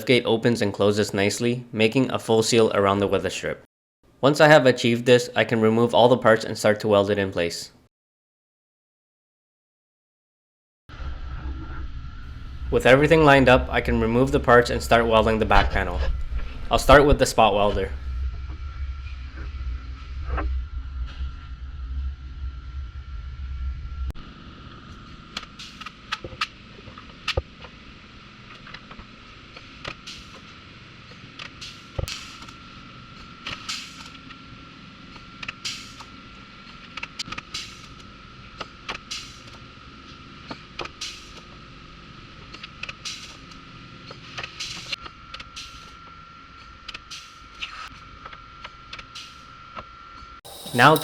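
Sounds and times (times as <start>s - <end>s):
faint high whine: 11.0s - 24.1s, 50.5s - 51.0s
spot welder crackling bursts: 50.5s - 51.0s.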